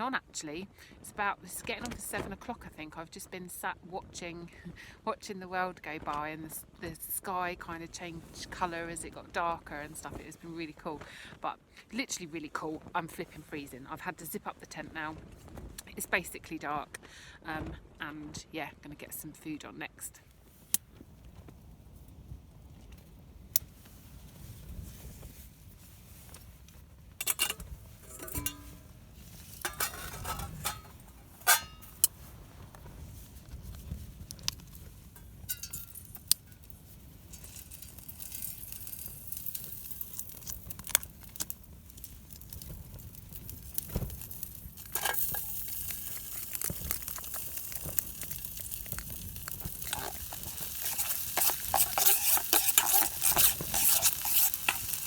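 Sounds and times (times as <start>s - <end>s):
pot and utensils clinking: 27.2s - 28.8s, 29.6s - 32.1s, 35.5s - 36.3s, 44.8s - 55.0s
stir fry sizzling: 27.2s - 32.3s, 33.6s - 55.0s.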